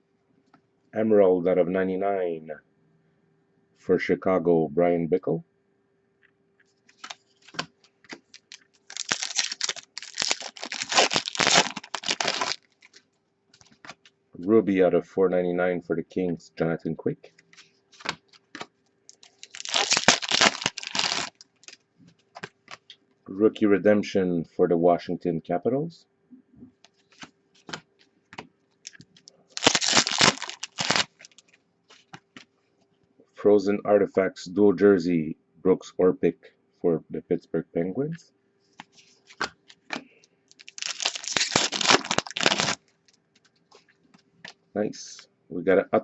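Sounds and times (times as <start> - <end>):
faint steady hum: 0.0 - 46.0
foil wrapper crinkling and tearing: 6.9 - 13.1, 18.0 - 21.8, 28.8 - 31.6, 39.4 - 42.9.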